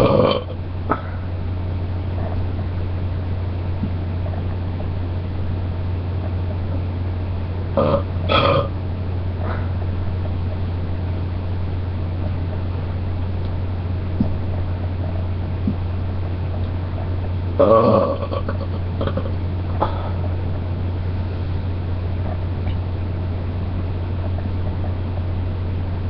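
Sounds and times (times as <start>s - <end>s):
person burping: 0.0s - 1.2s, 7.8s - 8.8s, 17.6s - 20.2s
low hum: 0.0s - 26.0s.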